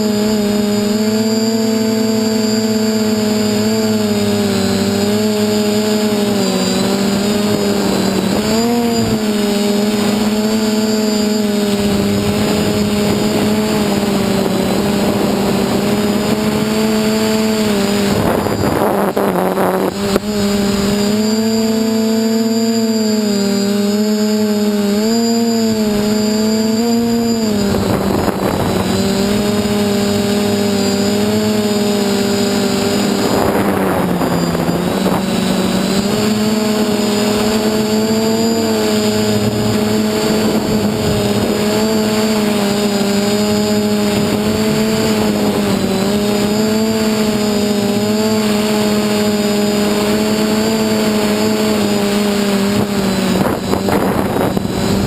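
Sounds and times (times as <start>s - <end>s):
drone propellers humming: 0.0s - 55.0s
rush of air noise: 6.2s - 21.2s, 27.2s - 46.7s, 52.6s - 55.0s.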